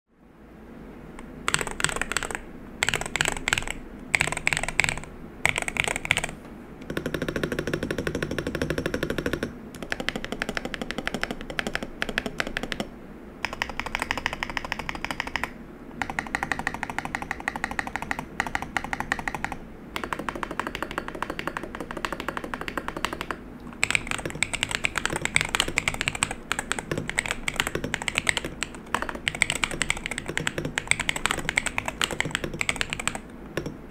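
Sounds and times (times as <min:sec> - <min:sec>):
mechanical keyboard typing: 0:01.2 - 0:33.9.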